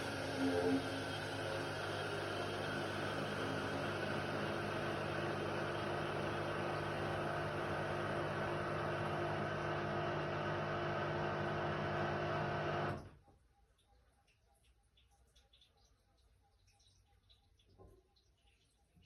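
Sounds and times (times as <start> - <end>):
washer-dryer motor humming: 0.0 - 13.1.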